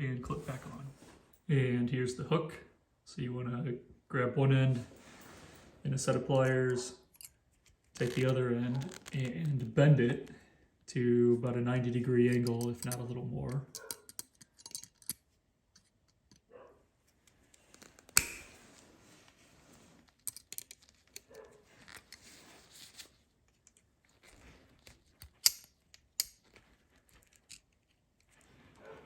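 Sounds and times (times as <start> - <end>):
pliers clicking and scraping metal: 7.1 - 9.7, 12.3 - 16.5, 17.1 - 18.6, 20.1 - 22.4, 23.0 - 28.4.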